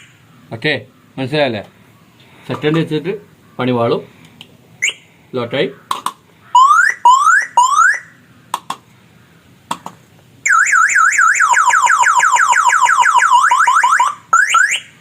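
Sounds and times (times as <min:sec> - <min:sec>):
vehicle alarm siren warbling: 0:04.8 - 0:05.0, 0:06.5 - 0:08.2, 0:10.4 - 0:15.0
alarm rising chirps: 0:06.6 - 0:08.2, 0:10.4 - 0:15.0.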